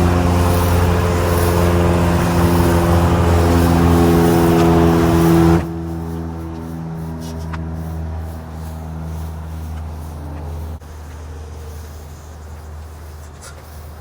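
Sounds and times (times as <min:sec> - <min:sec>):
pressure washer machine hum: 0:00.0 - 0:14.0
water spray hissing: 0:00.0 - 0:14.0.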